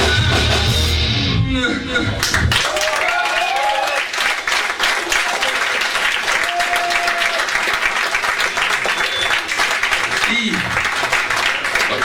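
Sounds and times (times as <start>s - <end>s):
audience applauding and cheering: 2.1s - 12.0s
whistle or shout: 8.9s - 9.4s.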